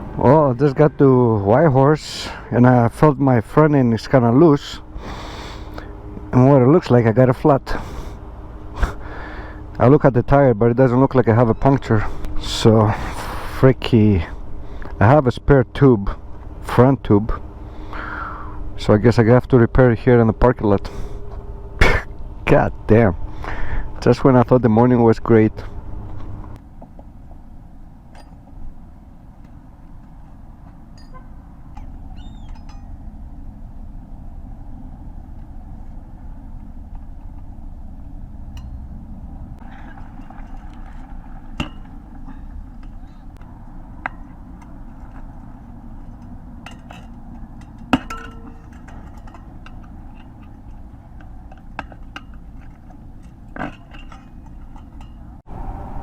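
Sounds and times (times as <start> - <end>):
traffic rumble: 0.0 - 56.0
ringing metal clank: 28.1 - 28.4, 30.9 - 33.0, 38.5 - 39.0, 46.6 - 50.4
metal tools clinking: 30.9 - 33.0, 46.1 - 55.3.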